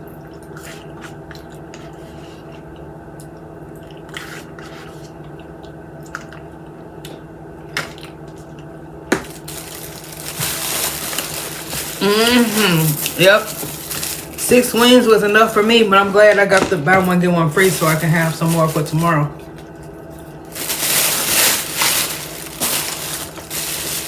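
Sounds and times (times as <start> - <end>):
crackle and rustle: 9.2 - 14.9, 17.6 - 24.0.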